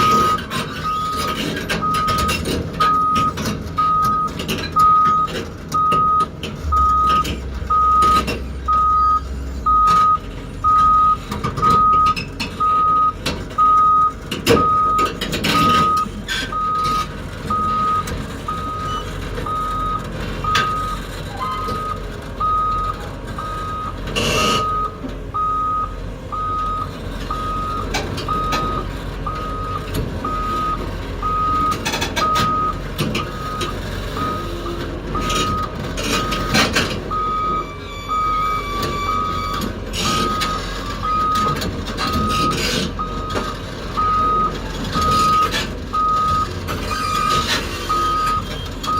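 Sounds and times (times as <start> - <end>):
back-up alarm beeping: 0.0 - 41.6, 42.2 - 48.9
heavy diesel machinery running: 0.0 - 48.9
knocks and clatters: 0.5 - 8.5, 31.6 - 34.1.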